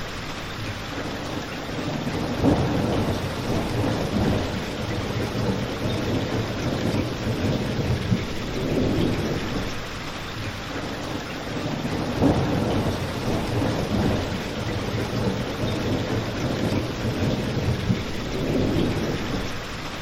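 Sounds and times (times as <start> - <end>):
heavy rain: 0.0 - 20.0.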